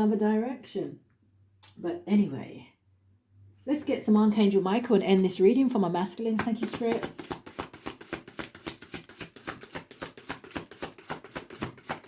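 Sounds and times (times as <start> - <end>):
cards being shuffled: 5.2 - 12.0.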